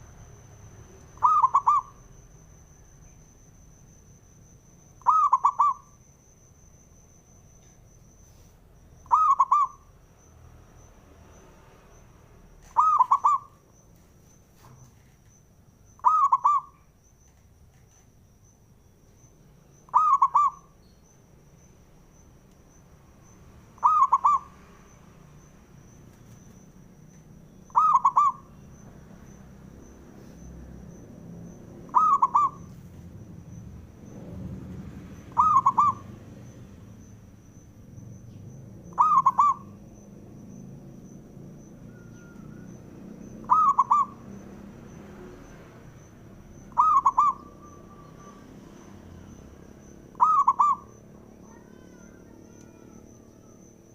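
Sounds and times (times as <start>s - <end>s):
dove cooing: 1.2s - 2.0s, 5.0s - 6.0s, 9.1s - 9.9s, 12.7s - 13.6s, 16.0s - 16.8s, 19.9s - 20.7s, 23.8s - 24.5s, 27.7s - 28.5s, 31.8s - 32.8s, 35.2s - 36.2s, 38.9s - 39.8s, 43.4s - 44.3s, 46.7s - 48.4s, 50.1s - 53.6s.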